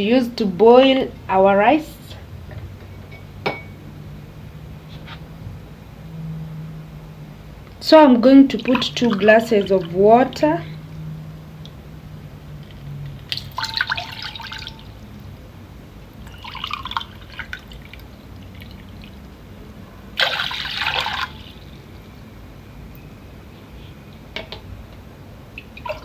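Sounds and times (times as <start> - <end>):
water pouring into cooking pot: 13.1 - 15.2, 16.2 - 19.3, 20.2 - 21.7.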